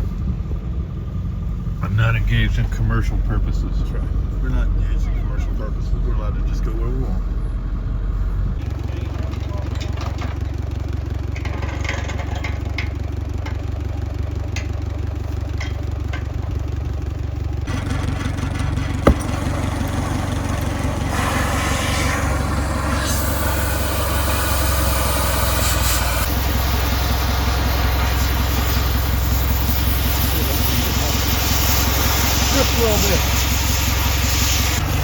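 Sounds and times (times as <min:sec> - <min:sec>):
engine idling: 0:00.0 - 0:35.0
sharp knock: 0:19.1 - 0:19.5
loud hiss: 0:21.1 - 0:35.0.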